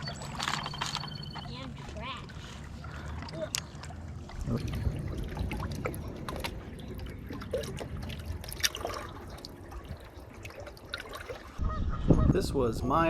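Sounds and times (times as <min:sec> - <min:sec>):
water lapping at shoreline: 0:00.0 - 0:13.0
low rumble: 0:02.1 - 0:10.4
small splashes: 0:02.2 - 0:11.6.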